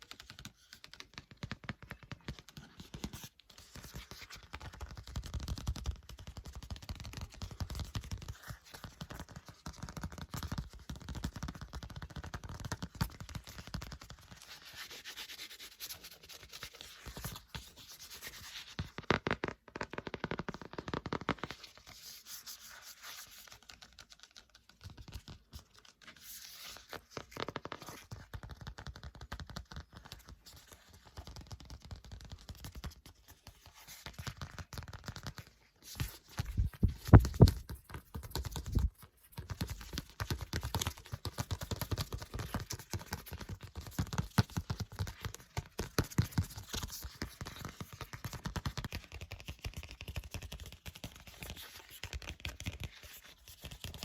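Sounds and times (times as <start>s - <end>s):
book pages turning: 35.9s - 37.7s.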